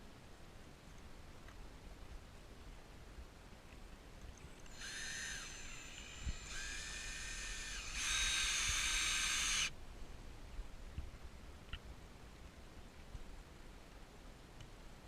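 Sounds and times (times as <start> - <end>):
power drill whining: 4.7 - 9.7.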